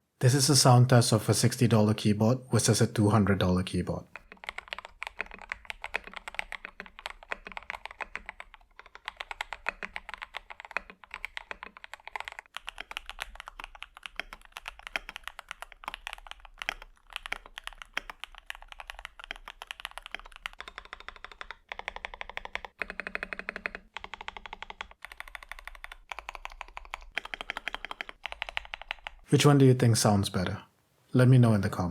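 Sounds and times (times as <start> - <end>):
mechanical keyboard typing: 4.1 - 29.3.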